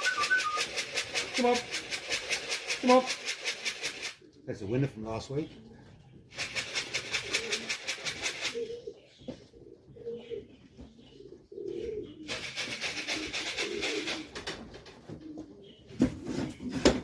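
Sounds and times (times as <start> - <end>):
wings fluttering: 0.0 - 4.3, 6.3 - 8.8, 11.6 - 15.5
pigeons cooing: 0.0 - 17.0.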